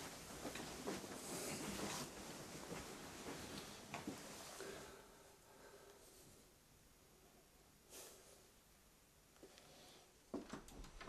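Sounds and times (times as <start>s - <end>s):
faint rustling: 0.0s - 5.0s.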